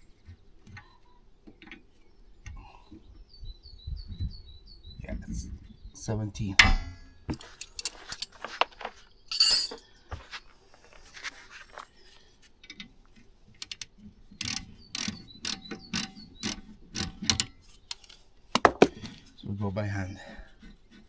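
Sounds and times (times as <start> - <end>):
spanner clicking on bolt: 13.6 - 18.8.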